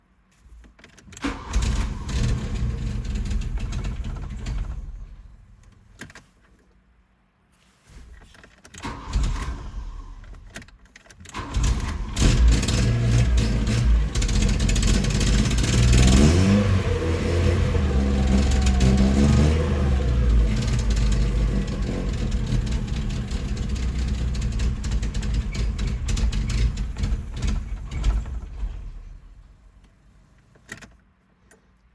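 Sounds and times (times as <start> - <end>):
starter motor cranking: 1.2 - 5.4, 8.8 - 29.7
car engine running and revving: 1.6 - 5.7, 11.3 - 29.8.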